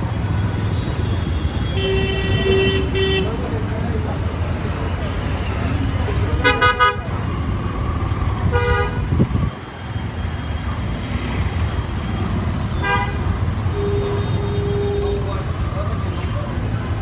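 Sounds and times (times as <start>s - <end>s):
street traffic rumbling: 0.0s - 17.0s
vehicle horn toots: 1.0s - 3.5s, 6.4s - 7.1s, 8.5s - 9.4s, 12.7s - 15.4s.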